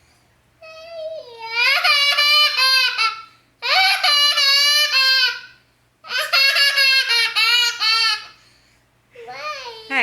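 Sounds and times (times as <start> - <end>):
baby laughing: 1.4 - 8.4.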